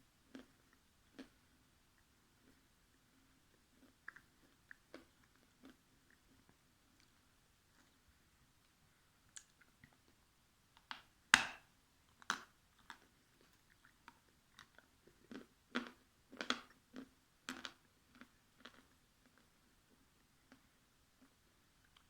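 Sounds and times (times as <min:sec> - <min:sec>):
dried clay crunching when chewed: 0:00.3 - 0:08.0, 0:12.1 - 0:21.3.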